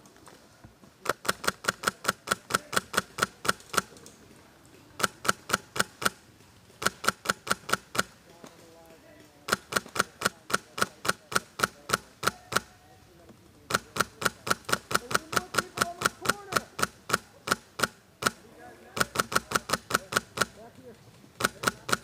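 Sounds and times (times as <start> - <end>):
airsoft rifle shots: 1.0 - 3.9, 5.0 - 6.2, 6.8 - 8.2, 9.5 - 12.8, 13.7 - 18.4, 19.0 - 20.6, 21.4 - 22.0.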